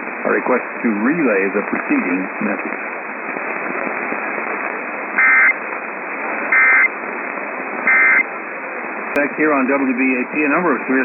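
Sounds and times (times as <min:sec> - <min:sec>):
radio static hiss: 0:00.0 - 0:11.0
digital data bursts: 0:05.2 - 0:05.6, 0:06.5 - 0:06.9, 0:07.9 - 0:08.3.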